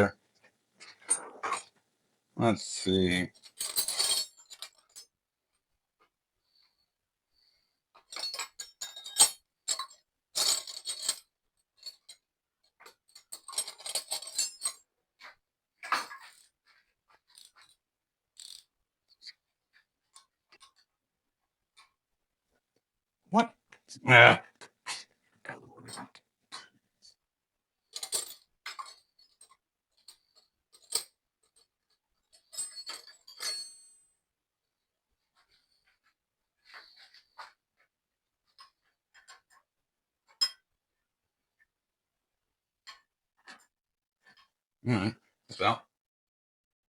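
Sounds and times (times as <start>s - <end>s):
metal hand tools clinking: 3.4s - 5.0s, 13.2s - 14.8s, 32.4s - 33.9s
metal tools clinking: 3.4s - 5.0s, 8.1s - 11.2s, 12.9s - 14.8s, 18.4s - 18.6s, 28.0s - 31.7s, 32.3s - 34.0s.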